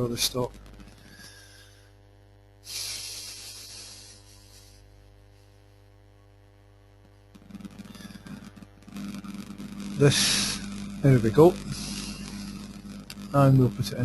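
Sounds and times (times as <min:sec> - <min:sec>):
electrical mains hum: 0:00.0 - 0:14.0
sudden hiss: 0:02.6 - 0:04.8, 0:09.8 - 0:13.6.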